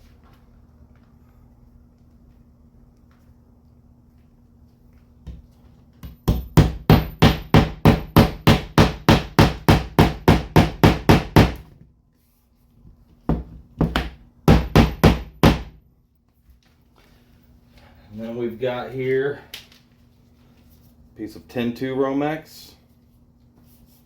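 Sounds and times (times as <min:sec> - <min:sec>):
hammer blows on plywood: 0:06.0 - 0:11.6, 0:13.3 - 0:15.8.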